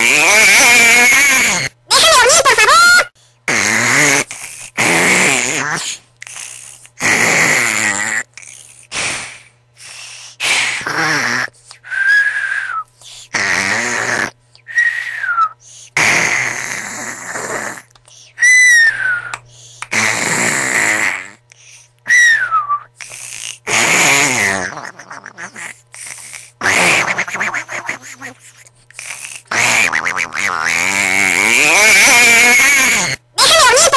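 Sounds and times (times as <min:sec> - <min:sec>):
person snoring loudly: 0:00.0 - 0:01.8, 0:03.5 - 0:09.5, 0:10.4 - 0:12.4, 0:13.2 - 0:15.1, 0:15.9 - 0:17.9, 0:18.7 - 0:21.5, 0:23.0 - 0:33.2.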